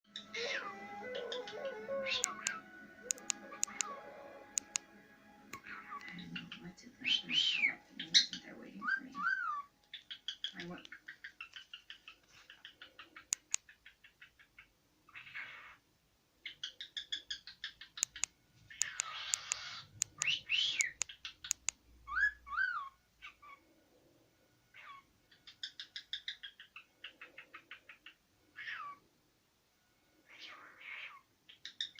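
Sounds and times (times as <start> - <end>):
bird chirping: 0.1 - 4.8, 5.5 - 15.8, 16.4 - 23.8, 24.7 - 29.0, 30.3 - 31.9
sharp clicks: 2.2 - 4.0, 4.6 - 4.8, 13.3 - 13.7, 18.0 - 21.8
cockatiel whistling and chirping: 7.0 - 10.4, 22.1 - 23.6, 30.4 - 31.9.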